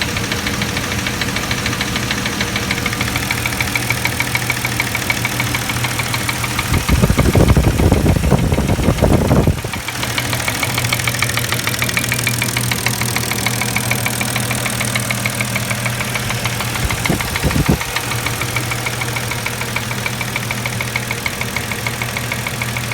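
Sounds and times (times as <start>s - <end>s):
engine idling with fast knock: 0.0s - 22.9s.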